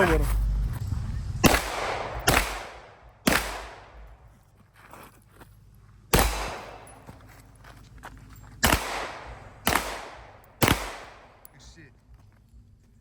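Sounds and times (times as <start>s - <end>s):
gunshots with ringing echo: 1.4s - 4.3s, 6.1s - 7.3s, 8.6s - 11.6s.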